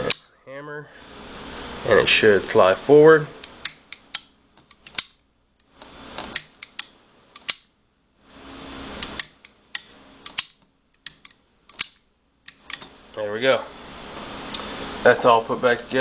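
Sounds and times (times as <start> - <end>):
metal clicks of rifle parts: 3.4 - 5.7, 9.0 - 12.9.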